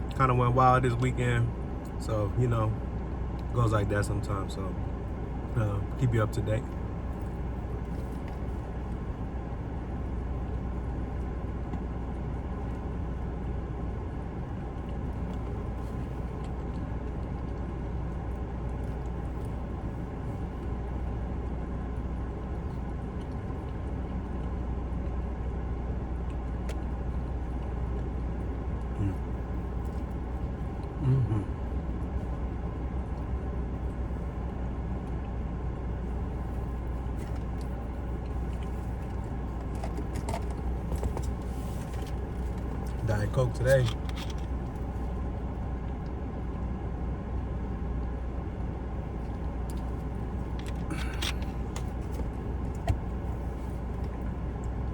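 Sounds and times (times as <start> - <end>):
air conditioning hum: 0.0 - 54.9
low voice murmur: 29.0 - 29.3, 31.0 - 31.6.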